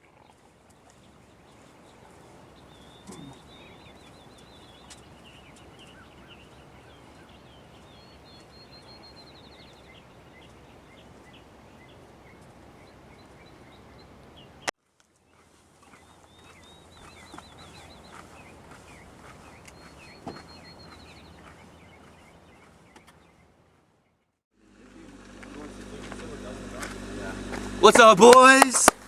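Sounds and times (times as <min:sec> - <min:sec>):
small birds chirping: 0:00.0 - 0:14.7, 0:15.8 - 0:24.3
steady outdoor hiss: 0:00.0 - 0:14.7, 0:15.4 - 0:23.7, 0:24.6 - 0:29.0.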